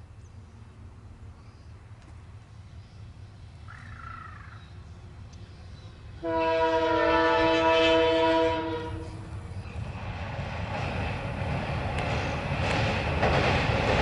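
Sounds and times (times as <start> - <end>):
locomotive air horn blast: 6.2 - 9.3.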